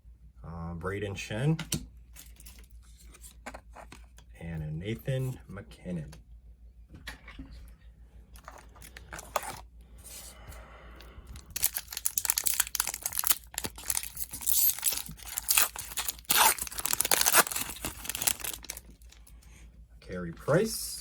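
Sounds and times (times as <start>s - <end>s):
wrapper tearing and crinkling: 8.5s - 9.6s, 11.4s - 19.3s.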